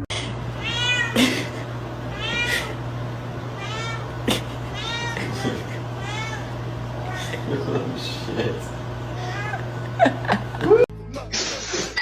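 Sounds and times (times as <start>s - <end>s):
cat meowing: 0.6s - 1.2s, 2.1s - 2.8s, 3.6s - 7.4s, 9.1s - 9.7s.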